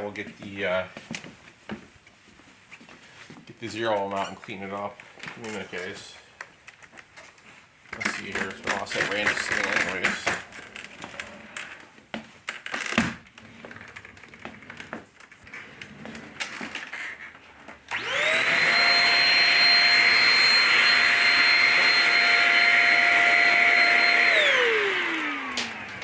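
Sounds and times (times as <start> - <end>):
vacuum motor high whine: 17.9 - 26.0.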